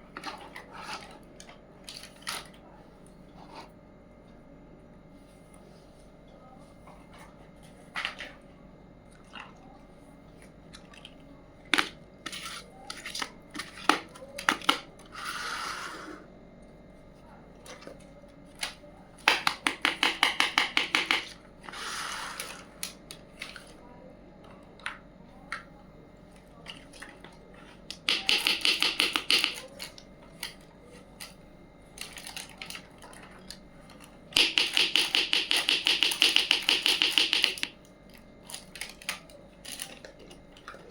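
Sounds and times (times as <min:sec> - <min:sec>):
toy pieces clicking and tapping: 0:19.2 - 0:21.3, 0:27.9 - 0:29.7, 0:34.4 - 0:37.8.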